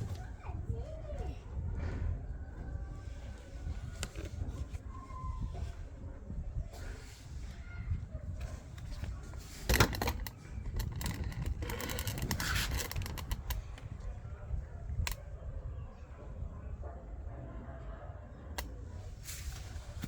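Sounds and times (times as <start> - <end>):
plastic handle parts clicking: 4.0 - 4.4, 8.4 - 14.0.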